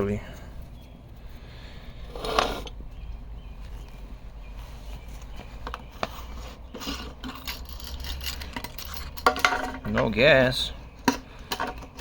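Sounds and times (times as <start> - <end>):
hard parts clicking: 6.7 - 10.3, 11.0 - 12.0.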